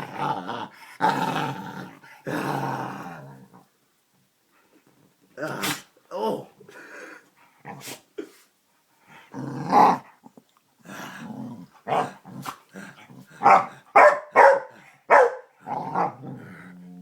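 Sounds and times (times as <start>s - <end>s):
dog growling and barking: 0.0s - 3.7s, 9.3s - 10.2s, 10.8s - 17.0s.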